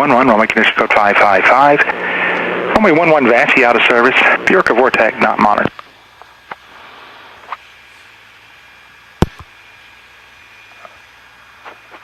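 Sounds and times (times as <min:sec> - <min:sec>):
headset intercom hiss: 0:00.0 - 0:07.6
faint aircraft engine running: 0:00.0 - 0:12.0.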